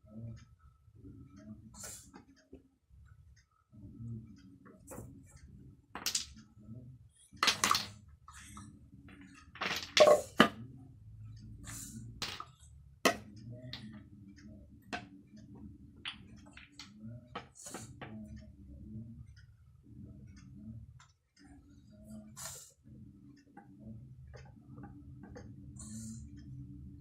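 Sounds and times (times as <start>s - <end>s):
low steady hum: 0.0s - 27.0s
wooden toy blocks clattering: 6.0s - 6.4s, 7.4s - 8.0s, 9.4s - 10.6s, 12.2s - 13.2s.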